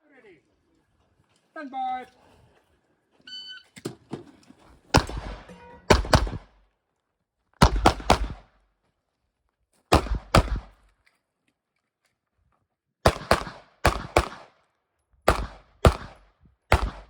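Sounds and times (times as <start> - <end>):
pistol shots: 4.9 - 6.6, 7.6 - 8.5, 9.9 - 10.8, 13.0 - 14.6, 15.3 - 17.0.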